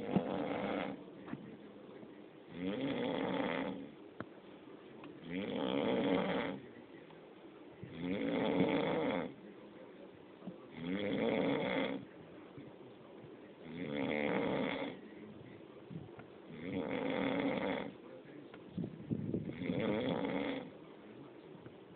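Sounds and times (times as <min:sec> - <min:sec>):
man snoring: 0:00.0 - 0:01.0, 0:02.5 - 0:03.9, 0:05.2 - 0:06.6, 0:07.9 - 0:09.4, 0:10.7 - 0:12.1, 0:13.7 - 0:15.0, 0:16.5 - 0:18.0, 0:19.4 - 0:20.8
quiet breathing: 0:00.0 - 0:21.9.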